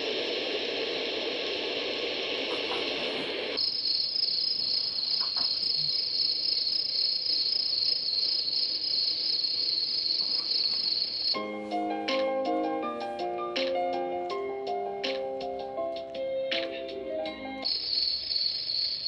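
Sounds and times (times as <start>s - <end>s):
crickets chirping: 0.0s - 13.2s, 16.1s - 19.0s
white-noise hiss: 0.0s - 19.0s.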